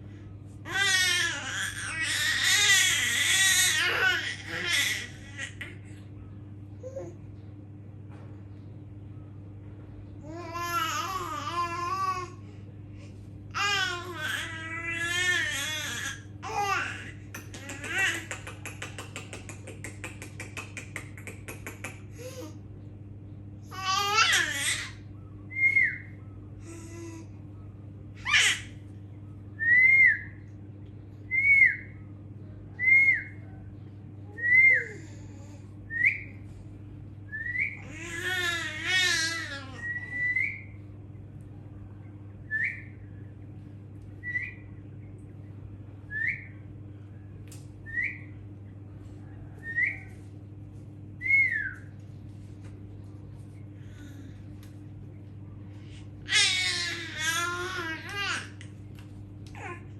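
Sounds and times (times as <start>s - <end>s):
baby laughing and babbling: 0.7s - 5.9s, 10.2s - 12.4s, 13.6s - 19.9s, 23.7s - 25.0s, 37.8s - 39.8s, 56.2s - 58.7s, 59.5s - 59.9s.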